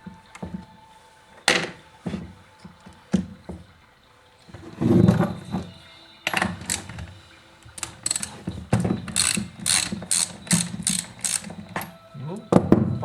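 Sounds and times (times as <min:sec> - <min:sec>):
ratchet wrench clicking: 0:07.8 - 0:11.9.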